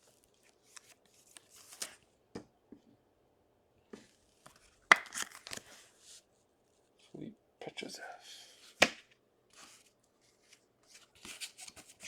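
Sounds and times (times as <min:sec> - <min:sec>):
card snap: 0:04.9 - 0:05.6.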